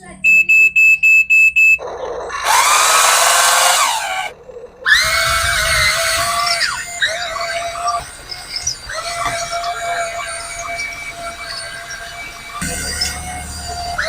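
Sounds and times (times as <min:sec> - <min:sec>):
swooping electronic tones: 0:01.6 - 0:14.0.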